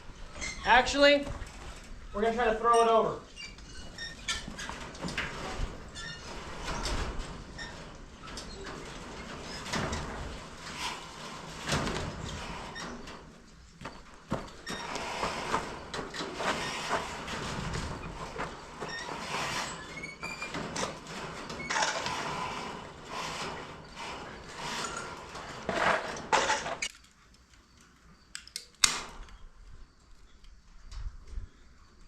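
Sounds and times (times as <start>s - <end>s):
chicken wire rattling and scraping: 3.6s - 26.9s.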